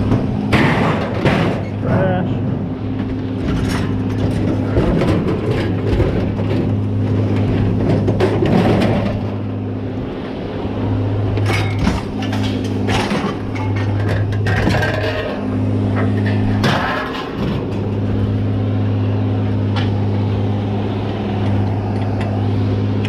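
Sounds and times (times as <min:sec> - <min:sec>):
vehicle engine running: 0:00.0 - 0:23.0
scrap metal clanking: 0:11.4 - 0:18.3.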